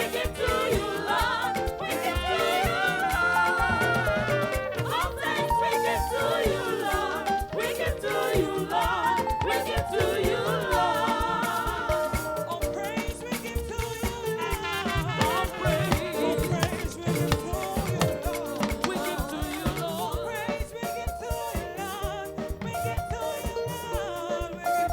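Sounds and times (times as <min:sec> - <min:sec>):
drum beat: 0:00.0 - 0:24.9
gospel singing with vibrato: 0:00.0 - 0:24.9
instruments playing: 0:14.6 - 0:19.5.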